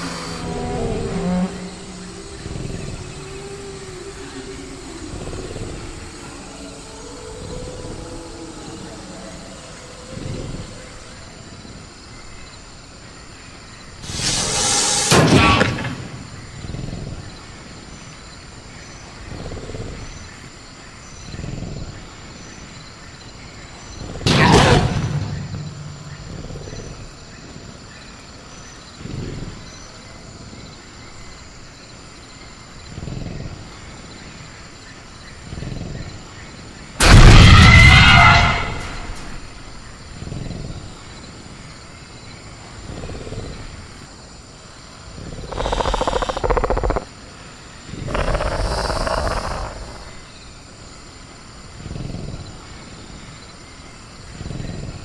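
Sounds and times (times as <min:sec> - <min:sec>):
crickets chirring: 0:00.0 - 0:55.0
cage rattling crash: 0:14.0 - 0:16.4, 0:24.3 - 0:26.8, 0:37.0 - 0:39.6
low growling breaths: 0:28.9 - 0:30.0, 0:44.8 - 0:50.6.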